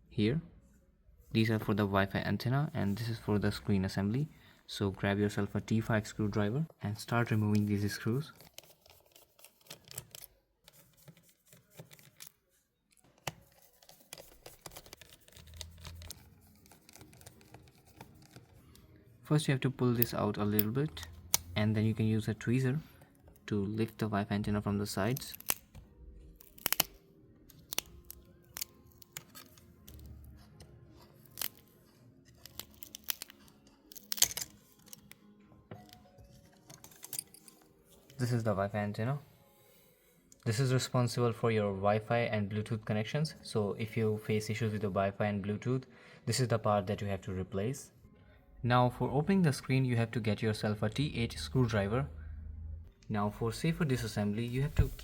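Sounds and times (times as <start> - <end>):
small screwdriver clicking and scraping: 8.3 - 18.7, 26.4 - 30.1, 32.3 - 35.2, 35.8 - 37.7
adhesive tearing crackles: 25.1 - 25.8, 26.4 - 30.1, 31.2 - 31.7, 32.4 - 35.2.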